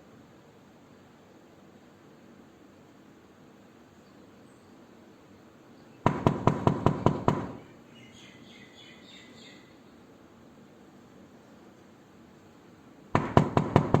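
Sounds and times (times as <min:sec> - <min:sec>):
rapid knocking on a door: 0:06.1 - 0:07.6, 0:13.2 - 0:14.0.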